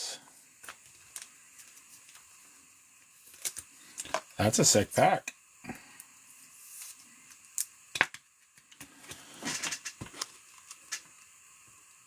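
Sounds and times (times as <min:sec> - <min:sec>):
crackly rustle: 0:00.6 - 0:02.5.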